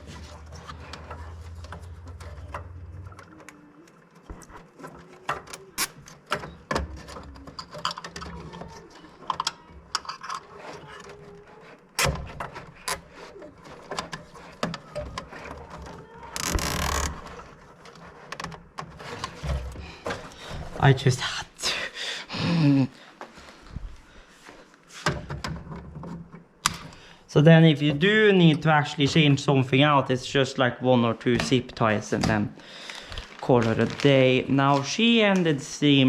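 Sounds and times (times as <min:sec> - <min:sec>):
hands handling wires and parts: 0:00.0 - 0:16.0, 0:32.2 - 0:35.6.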